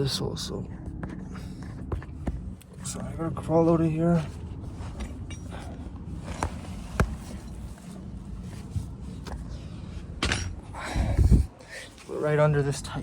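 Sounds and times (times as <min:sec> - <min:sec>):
person shuffling and scraping: 0:01.1 - 0:10.2.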